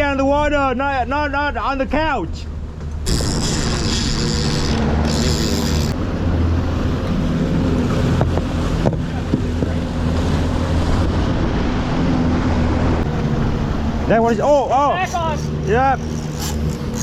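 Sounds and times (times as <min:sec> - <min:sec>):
boat engine humming: 0:00.0 - 0:17.0
wind on microphone: 0:03.0 - 0:14.1
water rushing past hull: 0:03.0 - 0:16.9.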